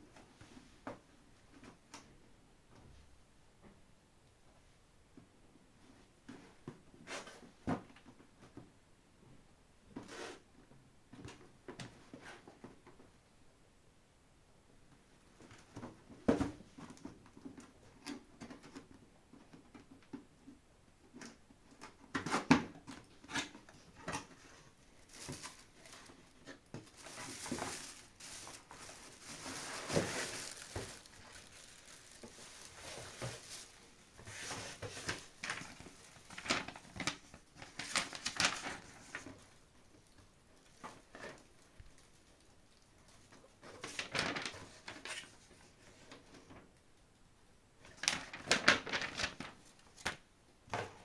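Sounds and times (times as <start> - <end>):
packaging rustling: 24.2 - 39.5, 48.0 - 49.6.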